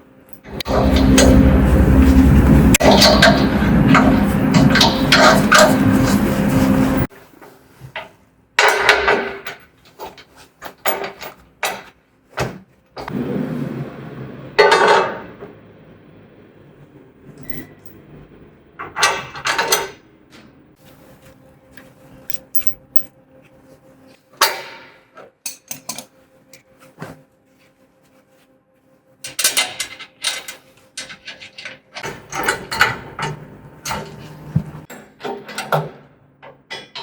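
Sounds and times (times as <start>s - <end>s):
steel parts and tools clanking: 0.3s - 7.1s, 13.2s - 15.6s, 17.2s - 20.6s, 22.2s - 23.1s, 29.3s - 35.8s.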